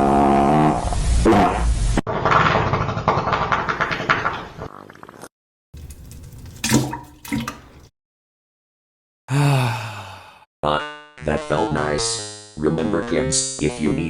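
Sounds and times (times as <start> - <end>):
water running and splashing: 5.8 - 7.9
low sigh-like voice: 9.3 - 10.5.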